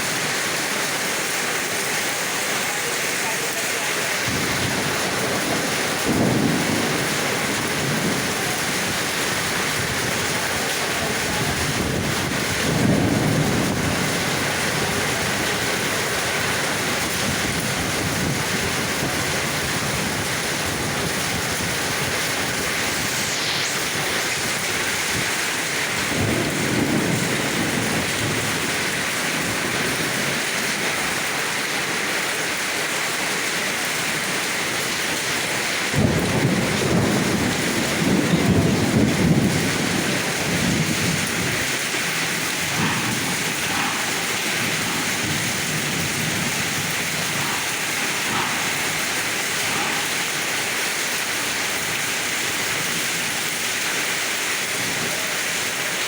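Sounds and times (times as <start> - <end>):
heavy rain pouring: 0.0 - 56.0
thunder rolling: 4.1 - 31.4, 34.7 - 53.4.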